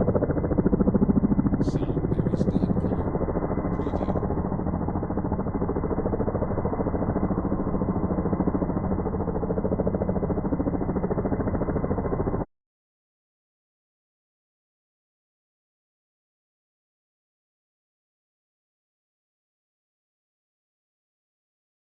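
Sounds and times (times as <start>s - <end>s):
distant helicopter rotor beat: 0.0s - 12.5s.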